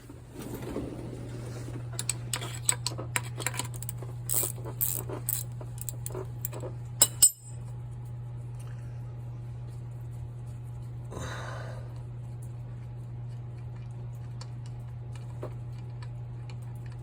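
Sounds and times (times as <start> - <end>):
steady low hum: 0.0 - 17.0
hand tools clinking on metal: 4.3 - 7.6.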